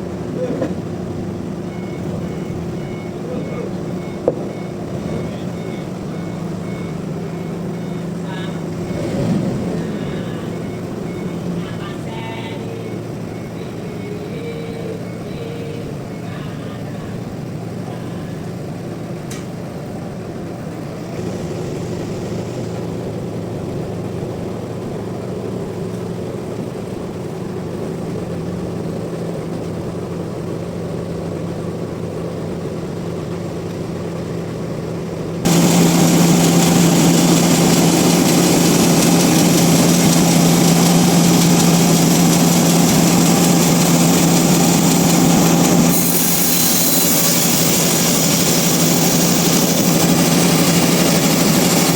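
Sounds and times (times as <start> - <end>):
sawmill machinery humming: 0.0 - 51.9.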